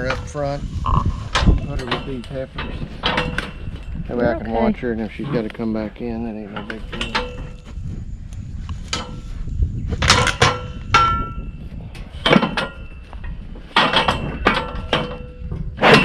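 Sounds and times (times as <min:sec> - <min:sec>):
metal gates clanging and rattling: 0:01.3 - 0:07.6, 0:10.0 - 0:16.0.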